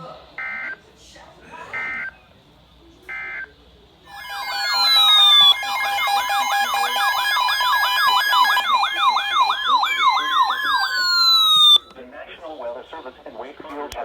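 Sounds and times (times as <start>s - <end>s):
two-note alert tone: 4.1s - 8.0s
long falling siren wail: 4.1s - 11.8s
yelping siren: 4.1s - 11.9s.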